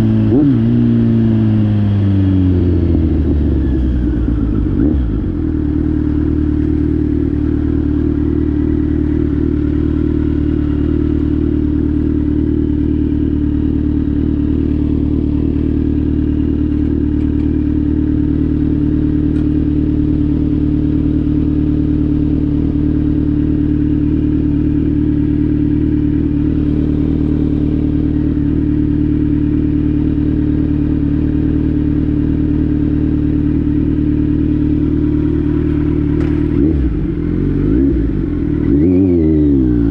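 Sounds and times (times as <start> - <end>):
motorcycle engine running steadily: 0.0 - 39.9.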